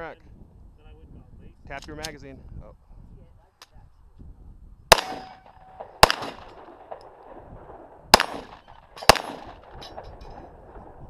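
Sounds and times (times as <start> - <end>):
handgun shots with echo: 4.9 - 7.2, 8.2 - 10.3.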